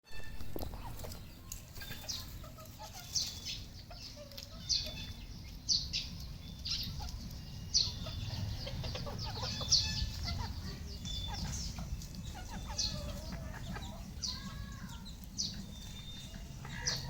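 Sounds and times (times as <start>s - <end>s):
steady low rumble: 5.1s - 17.0s.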